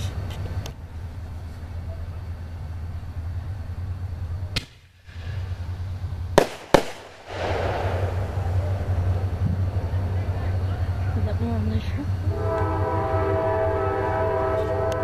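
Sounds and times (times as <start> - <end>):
fireworks crackling: 0.0 - 13.2
steady low hum: 0.0 - 15.0
fireworks banging: 4.4 - 11.9.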